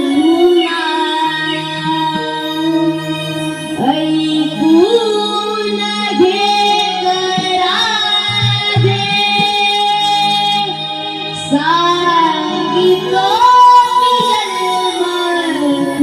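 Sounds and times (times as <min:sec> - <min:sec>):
high voice singing long notes: 0:03.8 - 0:10.8
low instrumental drone: 0:08.2 - 0:09.6.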